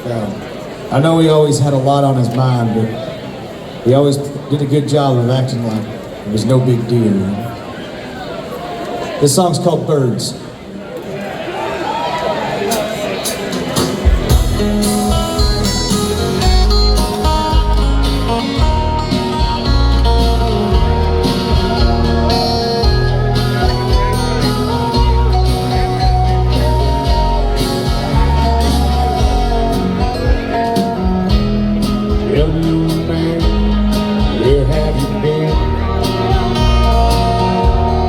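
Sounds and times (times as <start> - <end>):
acoustic guitar playing: 13.2 - 38.0
deep low notes repeating: 14.3 - 38.0.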